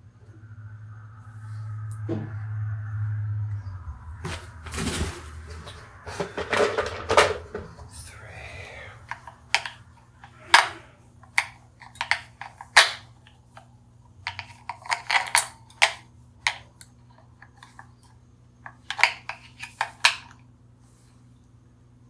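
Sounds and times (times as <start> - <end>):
faint low hum: 0.0 - 22.0
plastic parts clicking: 9.0 - 13.1, 14.3 - 17.8, 18.7 - 20.4.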